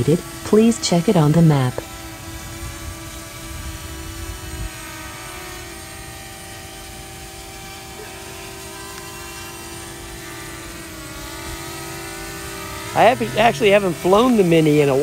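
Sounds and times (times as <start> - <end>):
drone propellers whining: 0.0 - 15.0
wind rumble on microphone: 2.3 - 5.0.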